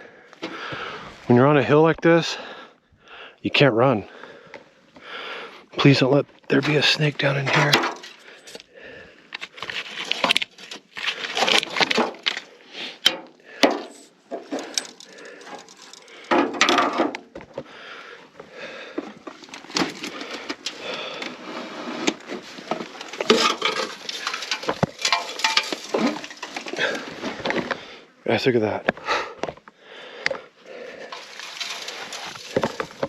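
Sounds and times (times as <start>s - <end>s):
debris rustling and clattering: 5.8s - 28.0s, 28.9s - 33.0s.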